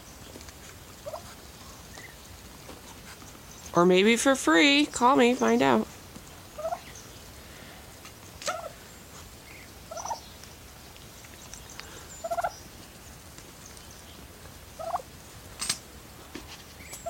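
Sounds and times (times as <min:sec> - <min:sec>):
turkey calling: 0:00.9 - 0:02.2, 0:06.4 - 0:07.1, 0:08.4 - 0:10.3, 0:11.8 - 0:12.6, 0:14.8 - 0:15.1.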